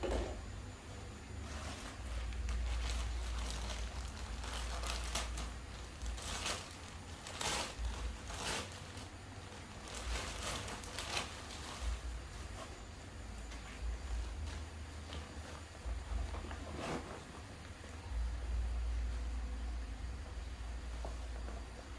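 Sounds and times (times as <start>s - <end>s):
plastic packaging rustling: 1.3s - 17.9s.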